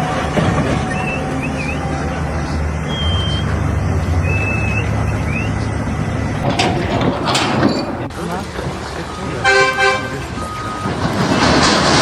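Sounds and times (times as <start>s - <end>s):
heavy engine rumbling: 0.0s - 12.0s
sharp clatter: 6.4s - 8.2s.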